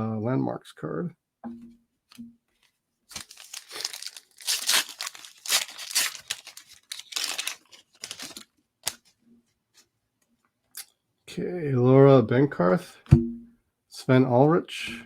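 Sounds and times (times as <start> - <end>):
wrapper tearing and crinkling: 3.1 - 9.2.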